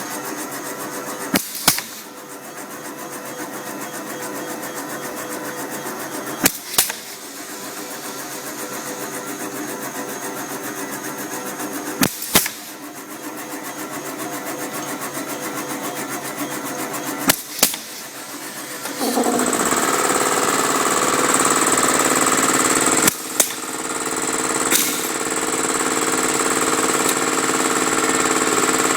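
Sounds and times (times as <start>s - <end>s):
machine tool running: 0.0s - 28.9s
sharp clicks: 24.4s - 28.9s.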